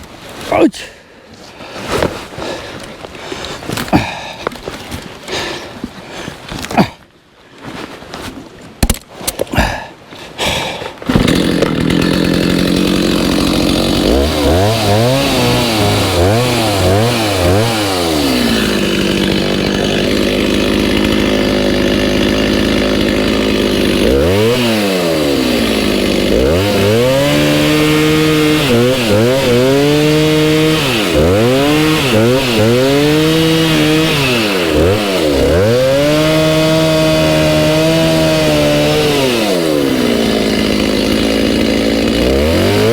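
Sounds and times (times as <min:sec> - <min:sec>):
chainsaw cutting log: 0:10.4 - 0:42.9.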